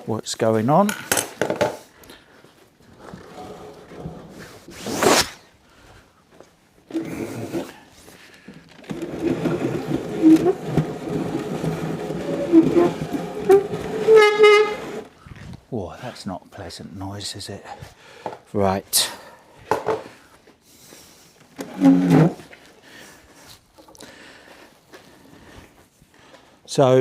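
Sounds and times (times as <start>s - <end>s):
chair scraping on workbench: 3.0s - 5.1s, 6.9s - 7.8s, 8.8s - 15.2s, 21.6s - 22.6s.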